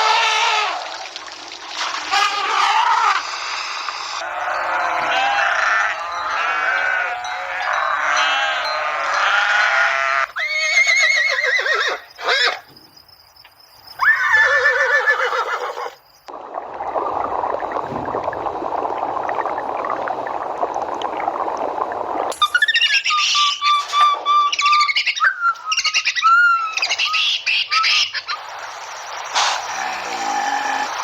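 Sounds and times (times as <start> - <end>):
goats bleating: 4.2 - 10.3.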